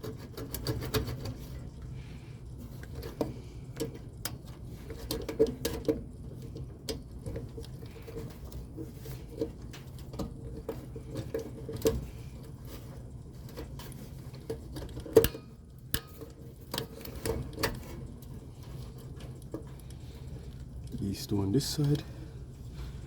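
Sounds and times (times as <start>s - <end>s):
steady low hum: 0.8s - 23.0s.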